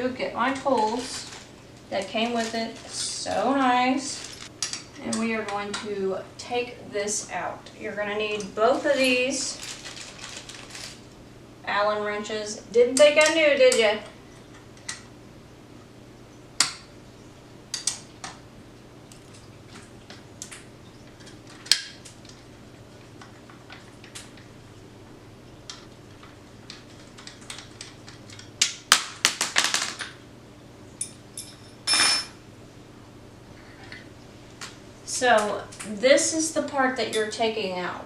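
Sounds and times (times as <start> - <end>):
metal tools clicking and clinking: 31.0 - 32.4.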